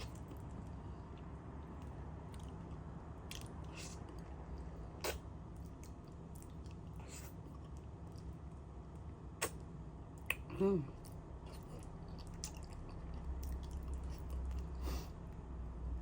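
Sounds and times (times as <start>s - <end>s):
person chewing soft food: 0.0s - 15.5s
wet mouth clicks: 5.0s - 7.3s, 9.4s - 9.6s.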